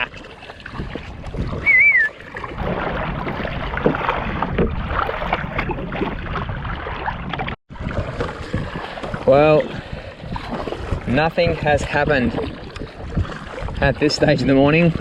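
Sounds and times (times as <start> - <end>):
water splashing around kayak: 0.0 - 15.0
wavering whistle-like tone: 1.6 - 2.2.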